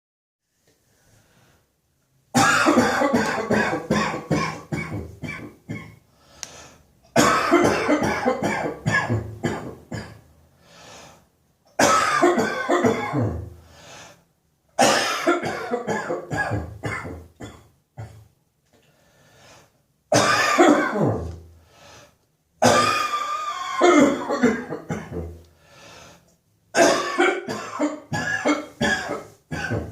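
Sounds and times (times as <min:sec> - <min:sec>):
person coughing: 0:02.4 - 0:06.0, 0:07.1 - 0:10.2, 0:11.8 - 0:13.5, 0:14.8 - 0:18.3, 0:20.1 - 0:21.3, 0:22.6 - 0:25.4, 0:26.8 - 0:29.9.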